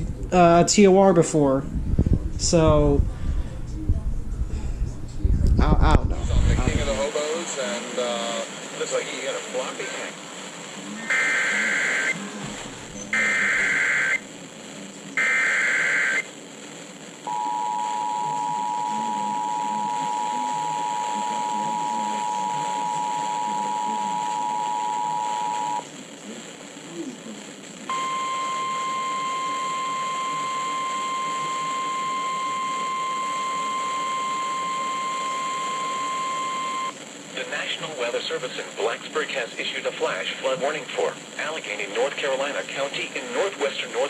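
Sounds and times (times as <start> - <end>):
radio hiss: 2.2 - 44.0
single-pitch warning alarm tone: 11.1 - 12.2, 13.1 - 14.2, 15.2 - 16.2, 17.3 - 25.8, 27.9 - 37.0
two-tone attention signal: 11.1 - 12.2, 13.1 - 14.2, 17.3 - 25.8, 27.9 - 37.0.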